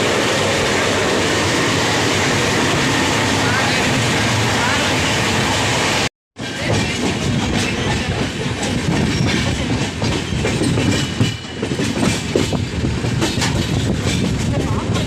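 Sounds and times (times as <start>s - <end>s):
train rumbling on rails: 0.0s - 15.0s
wheel clatter over track: 6.4s - 15.0s.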